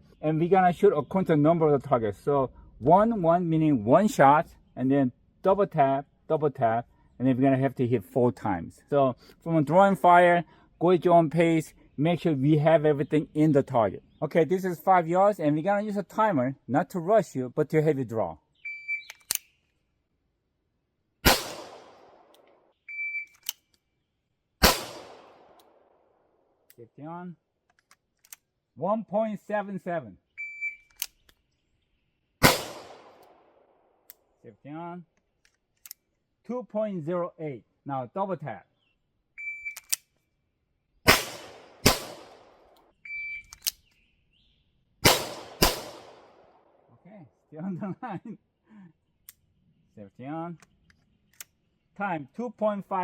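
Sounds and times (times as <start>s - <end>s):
short clicks: 18.9s - 19.8s, 23.2s - 23.8s, 30.7s - 31.4s, 39.6s - 40.2s, 42.7s - 44.0s
pistol shot: 21.2s - 22.4s, 24.6s - 25.8s, 32.4s - 33.7s, 41.1s - 42.8s, 45.0s - 46.7s.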